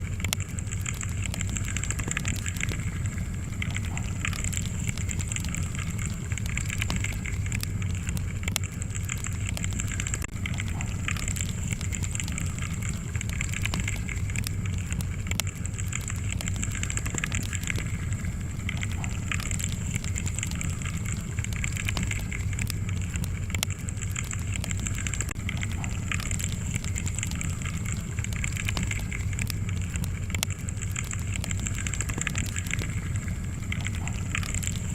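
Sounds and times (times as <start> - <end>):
fire crackling and popping: 0.0 - 34.9
fire rumbling: 0.0 - 34.9.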